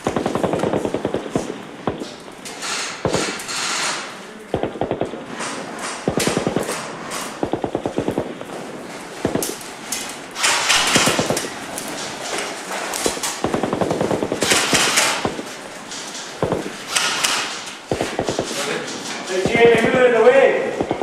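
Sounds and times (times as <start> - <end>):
machine-gun bursts: 0.0 - 11.8, 13.0 - 21.0
single gunshots: 4.5 - 5.4, 6.0 - 8.6, 10.6 - 11.6, 16.4 - 21.0.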